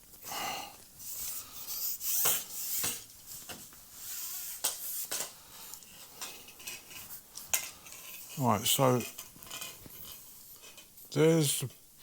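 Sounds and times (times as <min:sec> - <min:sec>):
scratchy rubbing of pole: 0:01.1 - 0:03.0, 0:04.0 - 0:05.2.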